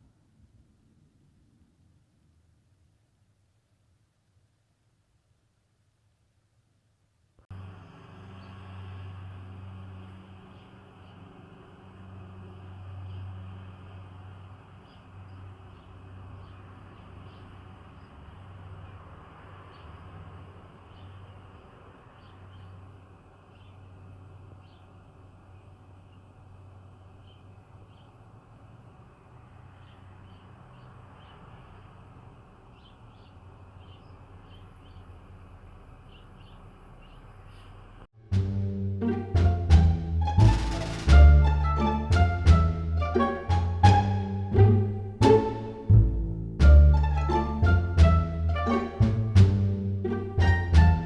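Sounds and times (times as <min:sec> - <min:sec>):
faint background wash: 0:00.0 - 0:51.0
small birds chirping: 0:07.6 - 0:38.1.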